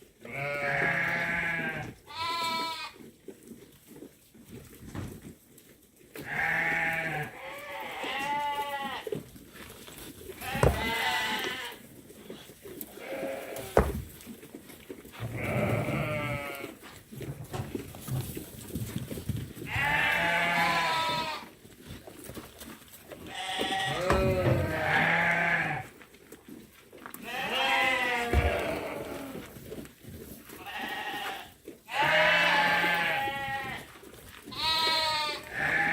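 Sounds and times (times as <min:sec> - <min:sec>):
sheep bleating: 0:00.2 - 0:03.0, 0:06.2 - 0:09.1, 0:10.4 - 0:11.8, 0:13.0 - 0:14.0, 0:15.2 - 0:16.8, 0:19.7 - 0:21.5, 0:23.3 - 0:25.9, 0:27.2 - 0:29.5, 0:30.6 - 0:33.9, 0:34.5 - 0:35.9
sharp knocks: 0:10.4 - 0:11.0, 0:13.8 - 0:14.2.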